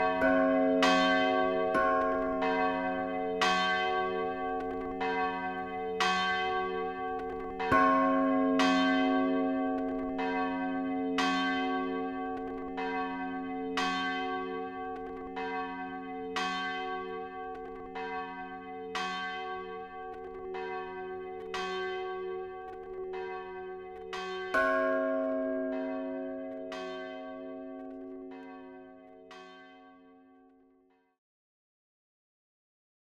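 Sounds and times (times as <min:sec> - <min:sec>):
church bells pealing: 0:00.0 - 0:30.3.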